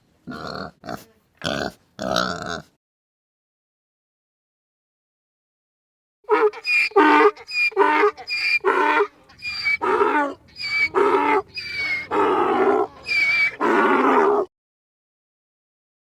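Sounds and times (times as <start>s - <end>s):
animal calling: 6.3s - 14.5s.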